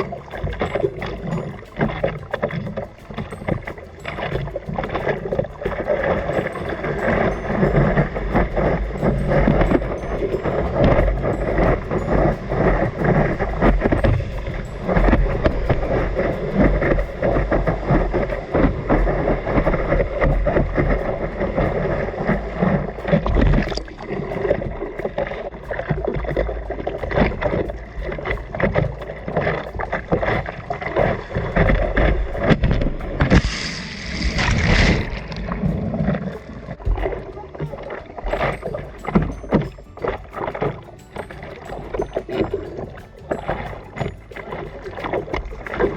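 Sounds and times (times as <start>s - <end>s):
water splashing around surfboard: 0.0s - 45.9s
wind buffeting microphone: 0.0s - 45.9s.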